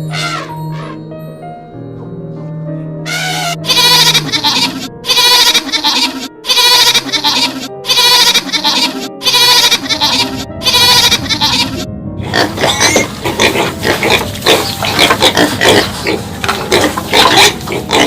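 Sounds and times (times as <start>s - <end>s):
pigs grunting and squealing: 0.0s - 1.0s, 3.1s - 18.0s
goat bleating: 0.1s - 1.0s, 3.0s - 11.9s.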